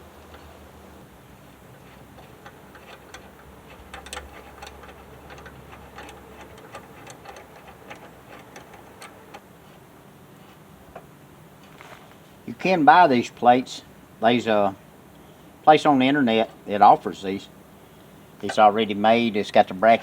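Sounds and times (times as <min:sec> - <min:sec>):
tap cutting steel clicking: 0:02.2 - 0:09.4.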